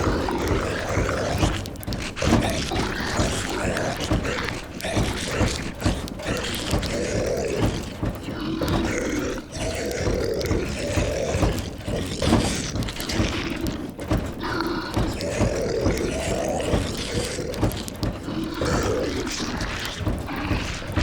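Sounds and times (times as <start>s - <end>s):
low rumbling: 0.0s - 21.0s
zombies moaning: 0.0s - 21.0s.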